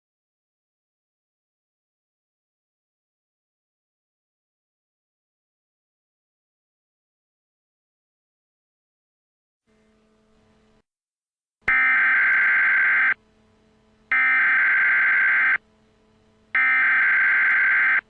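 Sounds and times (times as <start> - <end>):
harsh buzzing digital data tones: 11.7 - 13.2, 14.1 - 15.7, 16.5 - 18.0
faint low hum: 11.7 - 18.0.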